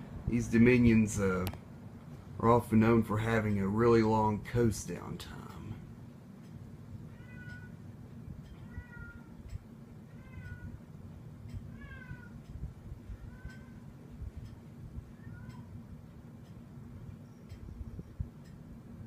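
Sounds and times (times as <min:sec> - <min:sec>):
fan running faintly: 0:00.0 - 0:19.0
meow-like squeak: 0:07.1 - 0:07.8, 0:08.6 - 0:09.3, 0:10.1 - 0:10.8, 0:11.7 - 0:12.4, 0:13.1 - 0:13.9, 0:15.1 - 0:15.8.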